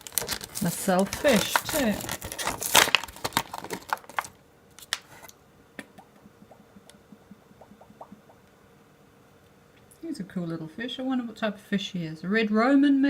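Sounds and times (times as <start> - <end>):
plastic packaging crinkling: 0.0 - 5.4.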